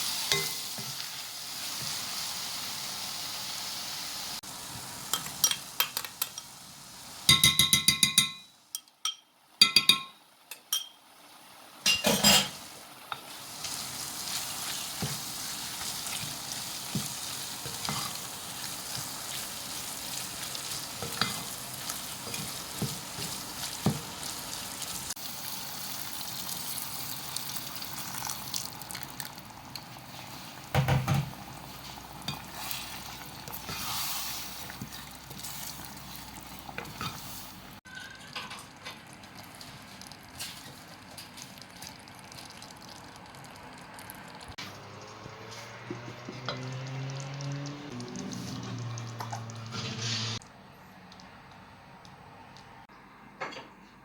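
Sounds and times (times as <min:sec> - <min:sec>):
food sizzling in a pan: 0:00.0 - 0:50.4
utensil scraping a pan: 0:49.7 - 0:50.4.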